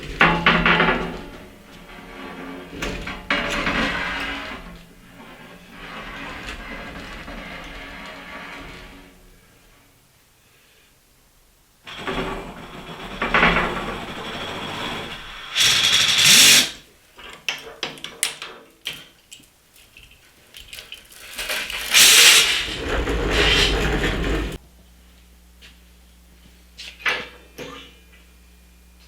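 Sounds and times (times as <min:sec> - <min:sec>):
power tool cutting steel: 0:12.0 - 0:16.8, 0:21.8 - 0:24.5.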